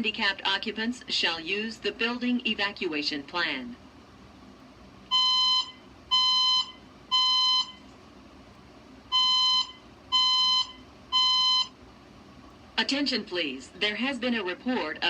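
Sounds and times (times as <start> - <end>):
fire alarm beeping: 5.1 - 7.8, 9.1 - 11.8.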